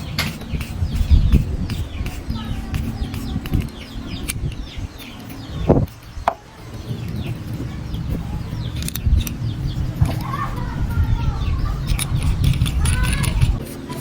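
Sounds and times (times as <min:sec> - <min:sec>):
birds chirping falling calls: 0:00.0 - 0:14.0.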